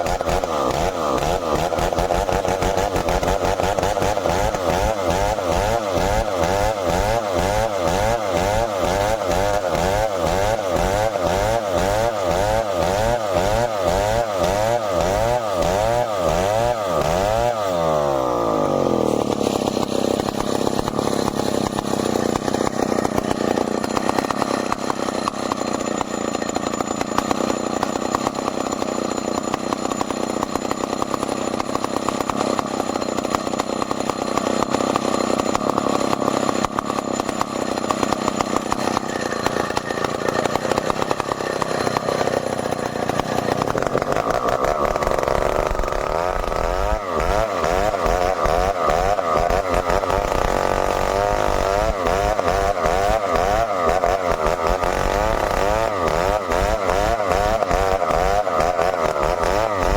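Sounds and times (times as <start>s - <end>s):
chainsaw running: 0.0s - 59.9s.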